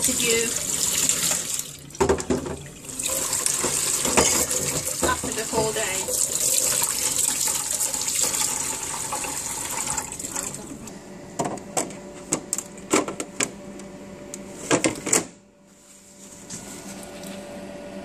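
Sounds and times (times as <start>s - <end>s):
tap water running into sink: 0.0s - 10.6s
drip trays knocking and clattering: 2.0s - 2.7s, 3.6s - 6.3s.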